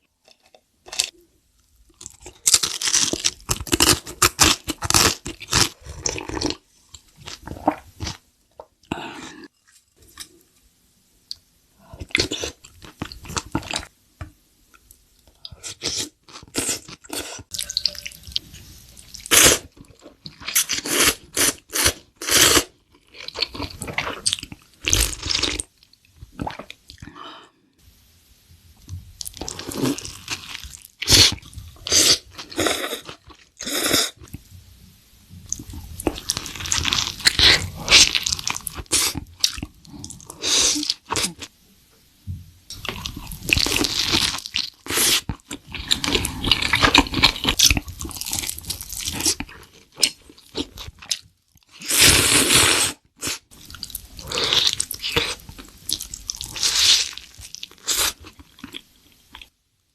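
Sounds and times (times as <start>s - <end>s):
crunching and chewing food: 1.9s - 10.4s, 19.0s - 27.2s, 35.5s - 41.5s, 42.7s - 51.9s, 52.9s - 59.6s.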